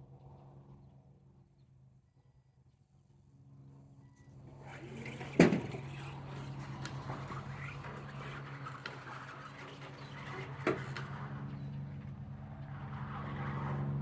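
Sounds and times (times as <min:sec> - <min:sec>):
electric motors humming: 0:04.5 - 0:11.1.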